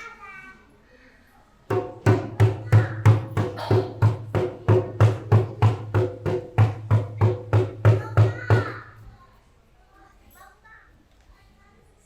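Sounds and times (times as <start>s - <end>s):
steady drum beat: 1.7s - 9.0s.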